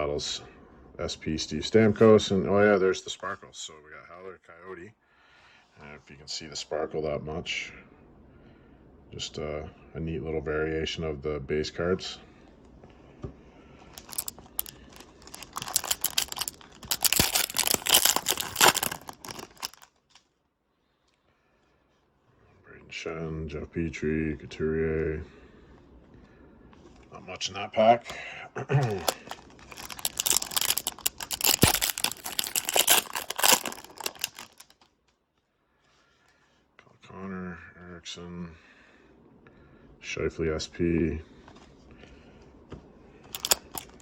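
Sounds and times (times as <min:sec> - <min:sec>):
foil wrapper tearing and crinkling: 0:14.0 - 0:19.9, 0:28.8 - 0:34.8, 0:43.4 - 0:44.0.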